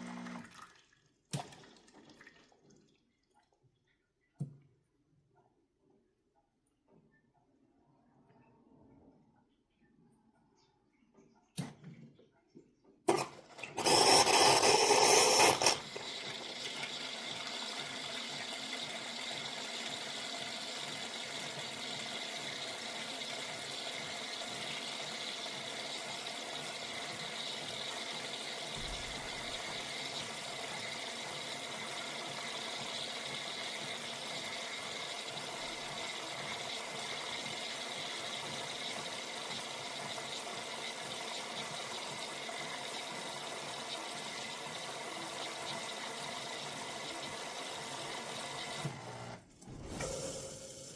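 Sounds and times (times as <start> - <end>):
espresso machine hissing: 0.0 - 0.4, 13.1 - 16.0, 27.1 - 50.9.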